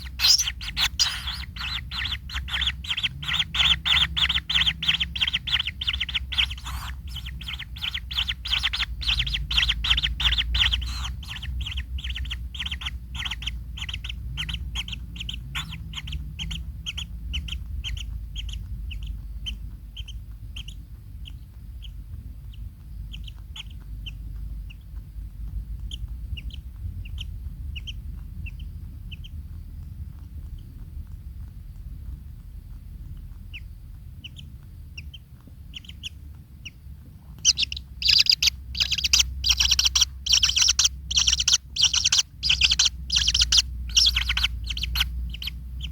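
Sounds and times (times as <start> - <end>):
kingfisher calling: 0.0 - 18.6, 37.4 - 45.9
steady low rumble: 0.0 - 45.9.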